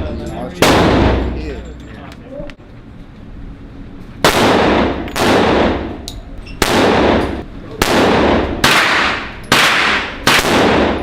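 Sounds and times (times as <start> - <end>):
echoing gunshots: 0.6 - 1.5, 4.2 - 6.0, 6.6 - 11.0.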